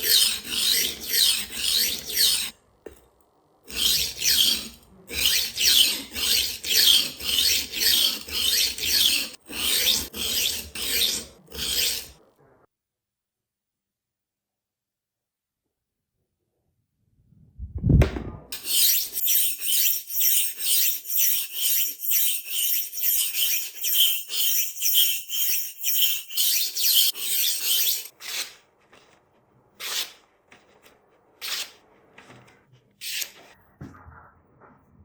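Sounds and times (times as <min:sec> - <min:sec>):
knife rasping on sharpening stone: 0:00.0 - 0:02.6, 0:03.7 - 0:12.2, 0:18.6 - 0:28.6, 0:29.8 - 0:30.2, 0:31.4 - 0:31.8, 0:33.0 - 0:33.6
low thump: 0:17.6 - 0:18.5.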